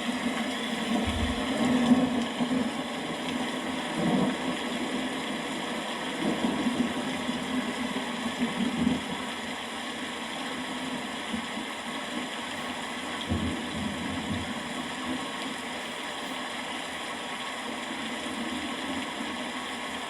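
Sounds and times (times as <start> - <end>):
steady rain: 0.0 - 20.0
distant thunder rumbles: 0.6 - 2.7.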